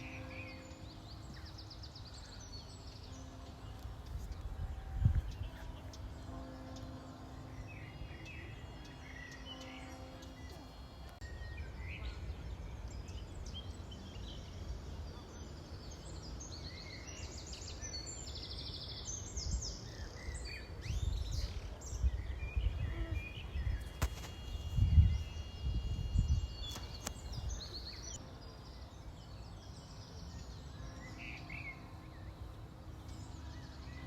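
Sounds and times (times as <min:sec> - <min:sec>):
small birds chirping: 0:00.0 - 0:34.0
low gusty rumble: 0:00.6 - 0:08.2, 0:19.3 - 0:28.2.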